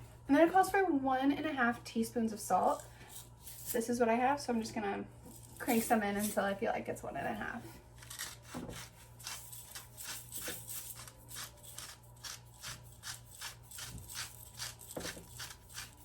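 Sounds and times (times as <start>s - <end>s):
salt grinder crushing salt: 8.0s - 16.0s.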